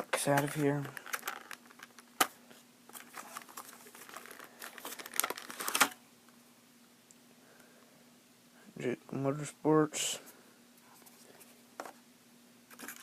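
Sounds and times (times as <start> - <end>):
plastic packaging crinkling: 0.1 - 6.0.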